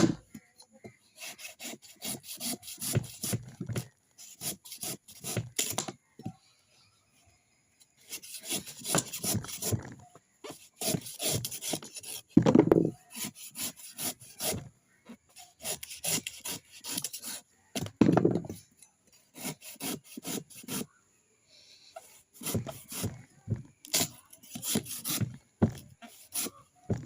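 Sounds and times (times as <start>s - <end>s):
coconut being scraped: 1.2s - 3.6s, 4.2s - 5.8s, 8.0s - 9.9s, 10.5s - 14.7s, 15.3s - 17.4s, 19.2s - 20.9s, 22.0s - 27.0s.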